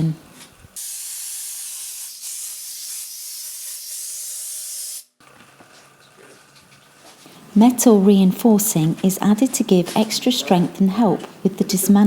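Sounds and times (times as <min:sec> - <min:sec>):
spraying hiss: 0:00.2 - 0:05.2.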